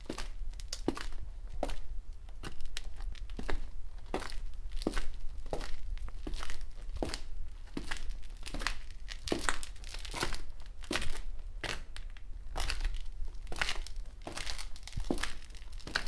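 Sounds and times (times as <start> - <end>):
footsteps walking: 12.6 - 16.0.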